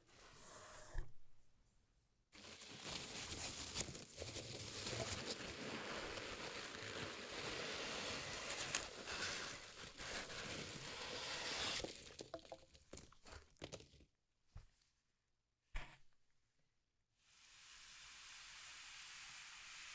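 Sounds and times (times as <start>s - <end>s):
packaging crinkling: 2.4s - 10.8s.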